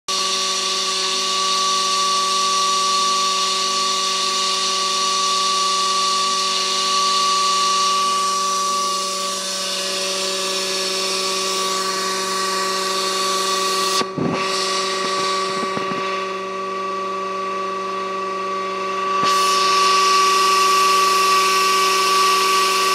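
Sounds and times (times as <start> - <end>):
pump motor whining and grinding: 0.1 - 22.9.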